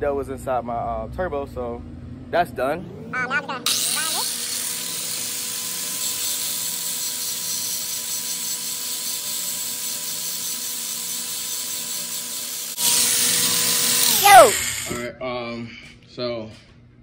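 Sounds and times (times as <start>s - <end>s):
power grinder whining: 2.9s - 15.1s.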